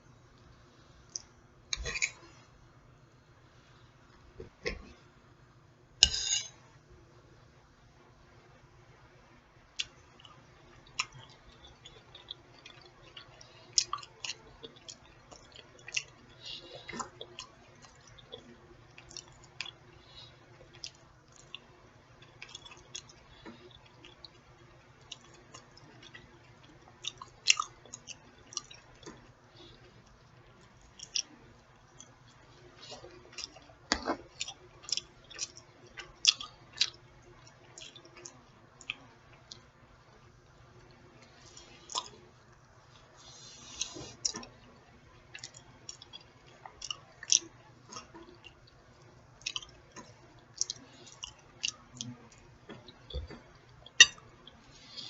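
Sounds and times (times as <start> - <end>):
person chewing wet smacks: 9.8 - 24.4, 25.0 - 29.8, 30.6 - 39.6, 41.6 - 42.2, 45.3 - 55.0.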